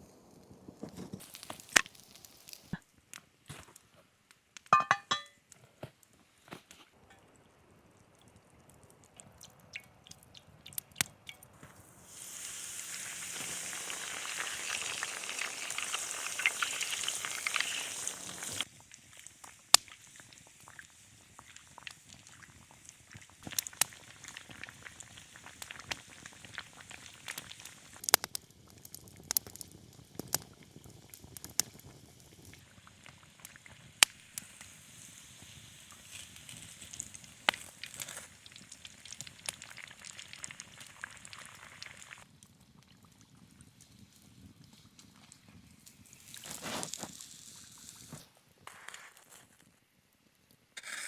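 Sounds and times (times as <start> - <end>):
fire crackling and popping: 0.0 - 49.8
food sizzling: 1.1 - 2.8, 4.7 - 5.3, 12.0 - 42.3, 45.9 - 48.3.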